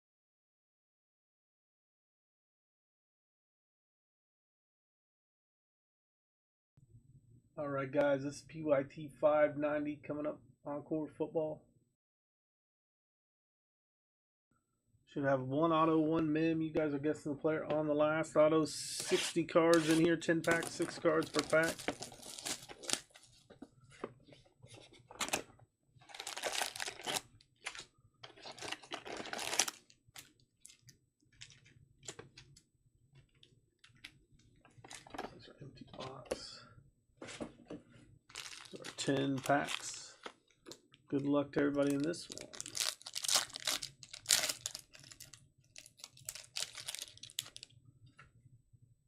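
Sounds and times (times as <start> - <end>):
foil packs and cardboard rustling: 19.0 - 23.4, 26.1 - 29.9, 38.3 - 40.3, 41.8 - 47.6.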